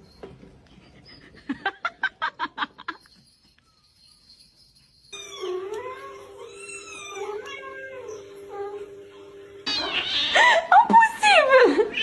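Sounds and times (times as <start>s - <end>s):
cat meowing: 5.2s - 8.6s, 9.7s - 10.4s.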